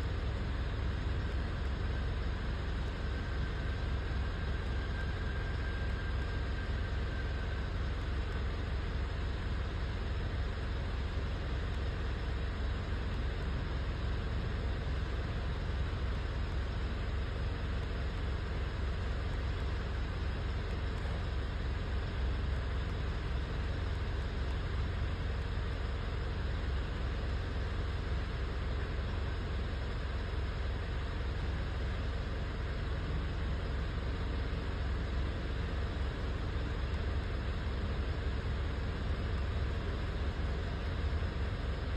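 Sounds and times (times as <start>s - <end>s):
engine idling with misfire: 0.0s - 41.9s.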